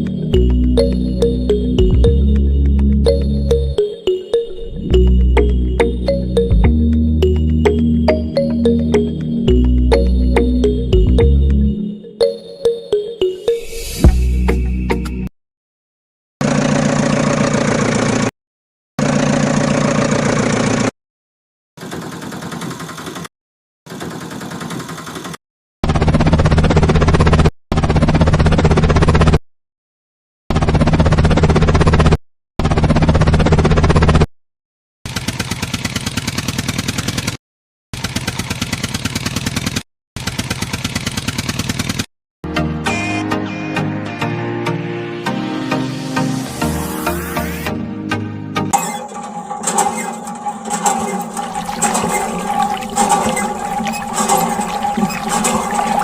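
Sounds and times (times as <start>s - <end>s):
engine running: 16.4s - 18.3s, 48.8s - 56.0s
rapid mechanical clatter: 21.8s - 23.3s, 23.9s - 29.4s, 35.1s - 37.4s, 38.0s - 42.1s, 48.8s - 56.0s.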